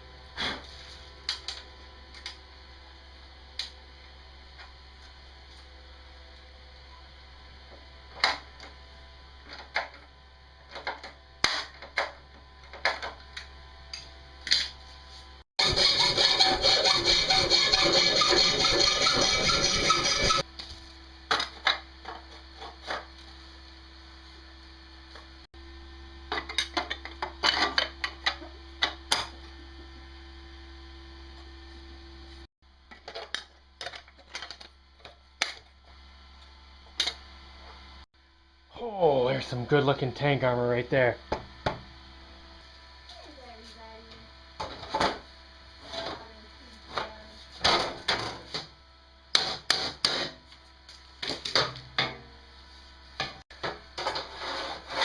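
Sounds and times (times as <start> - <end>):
power tool running: 15.6 - 20.5.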